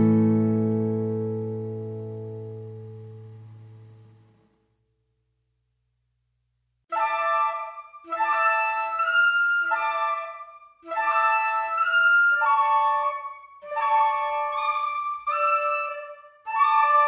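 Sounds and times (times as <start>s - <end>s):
flute-like wind melody: 6.9s - 17.0s.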